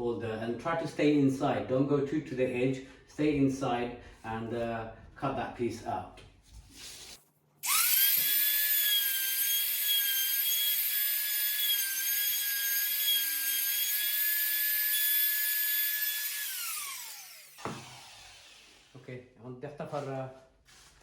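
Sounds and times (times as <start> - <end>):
trim router whining: 7.6 - 18.9.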